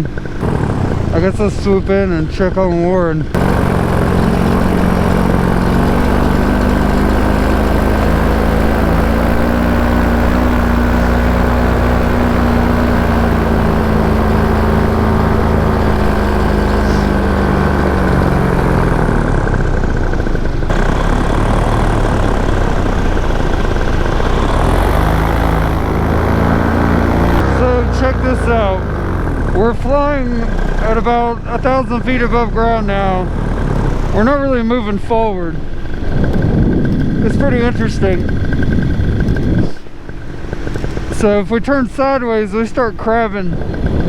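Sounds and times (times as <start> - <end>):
paramotor engine and propeller: 0.0 - 44.0
wind rush: 35.6 - 41.4.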